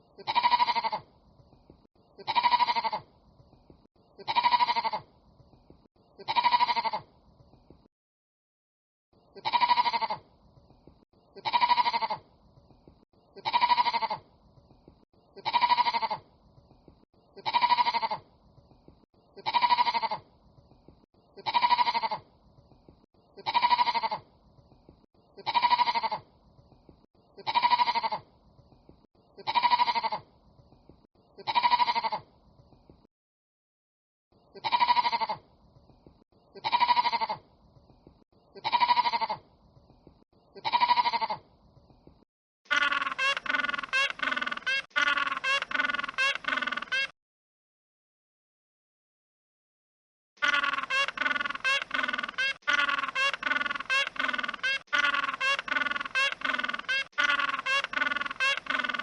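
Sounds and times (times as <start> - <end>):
animal bleating: 0.2 - 1.1, 2.2 - 3.1, 4.2 - 5.1, 6.2 - 7.1, 9.4 - 10.2, 11.4 - 12.2, 13.4 - 14.2, 15.4 - 16.2, 17.4 - 18.2, 19.4 - 20.2, 21.4 - 22.2, 23.4 - 24.3, 25.4 - 26.2, 27.4 - 28.2, 29.4 - 30.3, 31.4 - 32.3, 34.6 - 35.4, 36.6 - 37.4, 38.6 - 39.4, 40.6 - 41.4, 42.7 - 47.1, 50.4 - 59.0.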